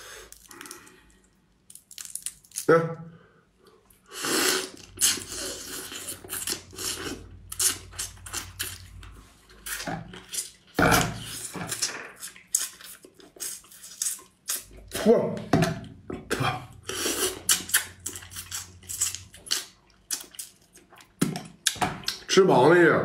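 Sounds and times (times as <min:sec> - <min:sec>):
crab shell cracking and crunching: 0:00.3 - 0:02.7
eating and sucking: 0:04.0 - 0:15.0, 0:16.4 - 0:22.2.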